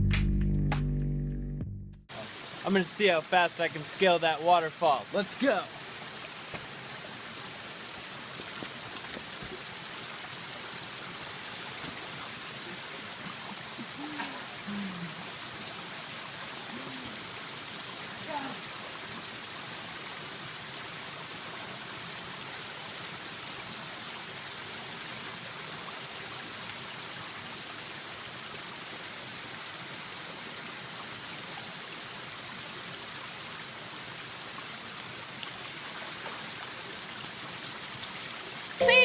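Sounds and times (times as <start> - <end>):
waterfall rushing: 2.1 - 19.8.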